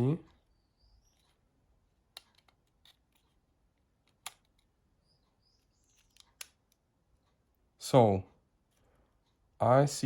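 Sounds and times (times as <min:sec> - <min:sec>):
clicks of plastic phone parts: 0:04.0 - 0:04.7.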